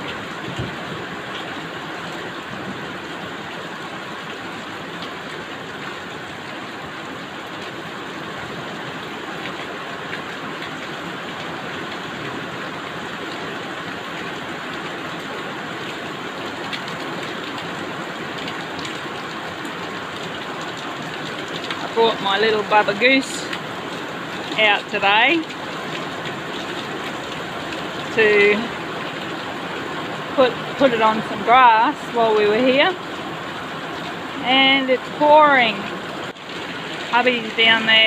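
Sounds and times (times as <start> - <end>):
heavy rain hissing: 0.0 - 38.0
faint raindrop taps: 15.8 - 22.0.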